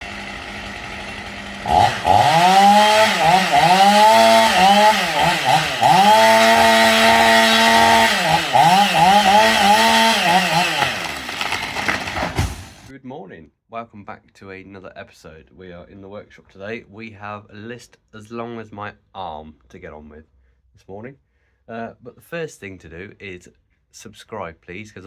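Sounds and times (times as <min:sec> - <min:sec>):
small engine revving: 0:00.0 - 0:12.9.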